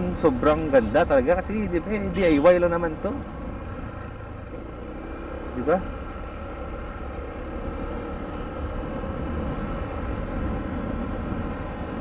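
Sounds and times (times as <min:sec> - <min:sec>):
motorcycle running: 0:00.0 - 0:12.0
wind rumble: 0:06.1 - 0:12.0.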